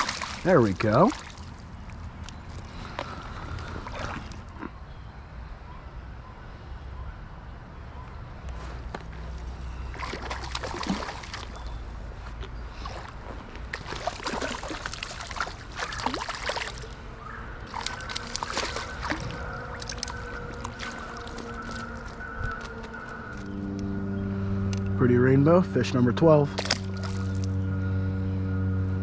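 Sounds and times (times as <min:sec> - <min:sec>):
fish splashing in water: 0:00.0 - 0:04.6, 0:09.6 - 0:11.9, 0:12.8 - 0:23.5, 0:26.6 - 0:27.6.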